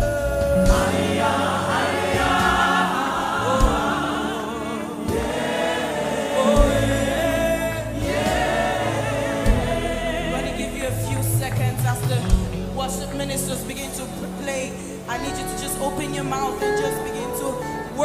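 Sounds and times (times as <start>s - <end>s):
group singing gospel music: 0.0s - 12.6s
low musical backing: 0.0s - 18.0s.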